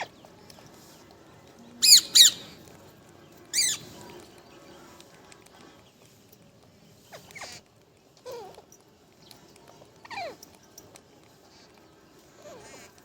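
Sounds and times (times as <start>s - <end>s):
parrot calling: 1.8s - 2.6s, 3.5s - 3.9s.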